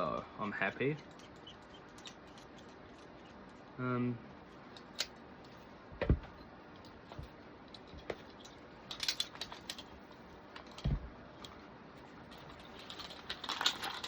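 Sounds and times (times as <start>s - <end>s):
dull thumps: 5.9s - 6.4s.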